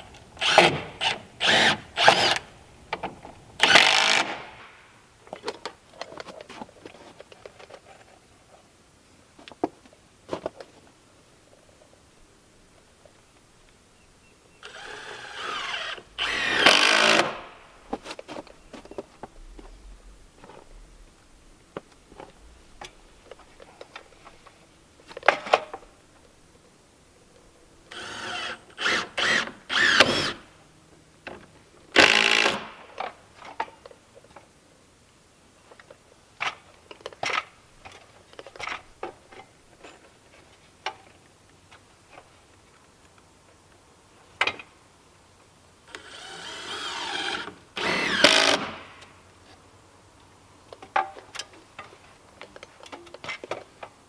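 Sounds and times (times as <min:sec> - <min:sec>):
power drill bursts: 0:00.3 - 0:04.7, 0:14.6 - 0:17.6, 0:27.9 - 0:30.4, 0:32.0 - 0:32.8, 0:45.9 - 0:49.1.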